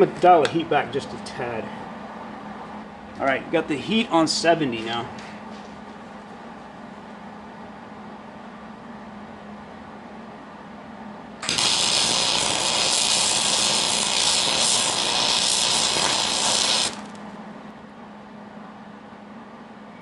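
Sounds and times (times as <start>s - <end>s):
welding arc crackling hiss: 11.4s - 17.2s.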